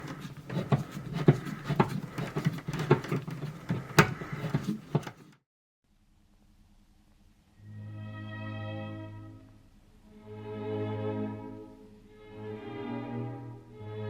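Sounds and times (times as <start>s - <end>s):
sharp clicks and knocks: 0.0s - 5.4s.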